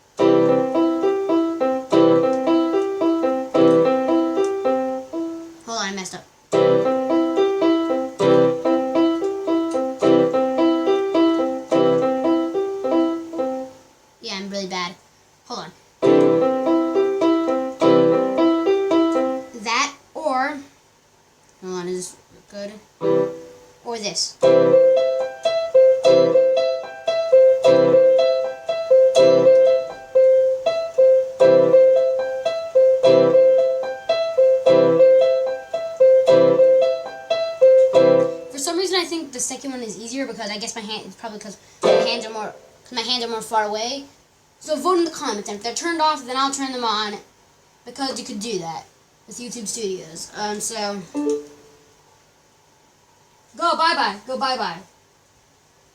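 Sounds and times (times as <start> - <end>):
electronic keyboard piano pattern: 0.0 - 5.6, 6.5 - 13.8, 16.0 - 19.6, 23.0 - 23.7, 24.4 - 38.6, 41.8 - 42.9, 51.2 - 51.8.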